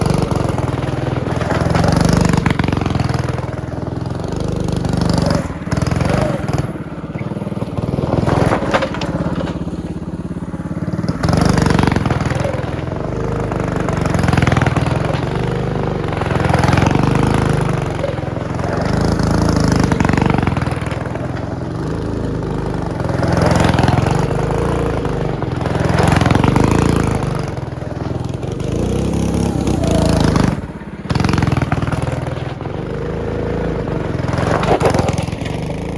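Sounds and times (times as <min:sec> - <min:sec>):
small engine revving under load: 0:00.0 - 0:35.9.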